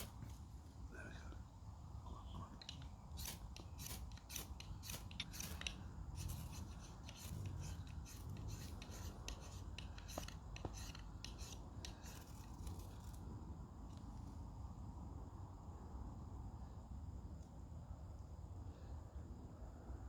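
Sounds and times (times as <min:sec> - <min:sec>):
striker scraping ferro rod: 0:02.6 - 0:12.8.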